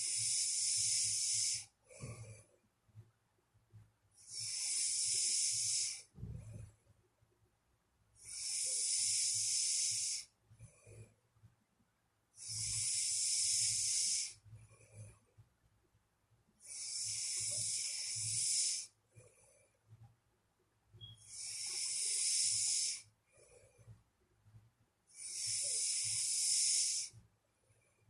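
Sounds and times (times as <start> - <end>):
person snoring: 0.0 - 2.3, 4.3 - 6.1, 8.2 - 10.3, 12.4 - 14.4, 16.6 - 18.9, 21.3 - 23.1, 25.1 - 27.1
soft low breathing: 0.0 - 2.7, 4.1 - 6.8, 8.2 - 11.3, 12.3 - 15.4, 16.6 - 20.1, 21.0 - 24.1, 25.1 - 28.0.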